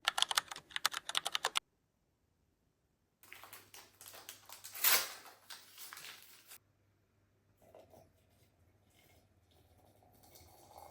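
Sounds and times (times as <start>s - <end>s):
computer keyboard typing: 0.0s - 1.6s.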